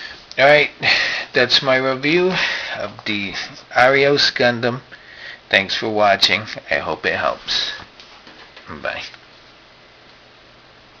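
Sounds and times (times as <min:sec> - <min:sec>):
low background hiss: 0:00.0 - 0:11.0
person speaking: 0:00.3 - 0:04.9, 0:05.5 - 0:07.9, 0:08.6 - 0:09.2.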